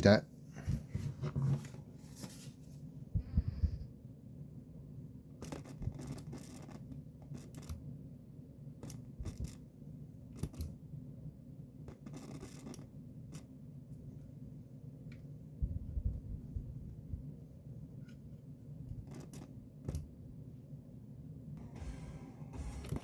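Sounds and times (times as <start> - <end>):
steady low hum: 0.0 - 23.0
scraping and clicking handling noise: 17.9 - 20.1.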